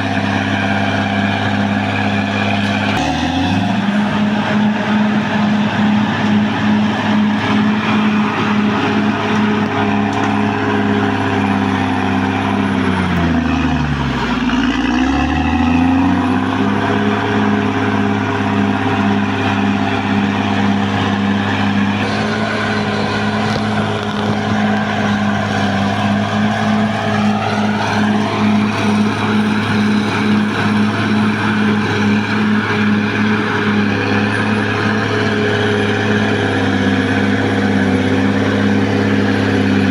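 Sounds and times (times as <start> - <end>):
bulldozer diesel engine pulsing: 0.0 - 39.9
short rising whine: 2.2 - 39.3.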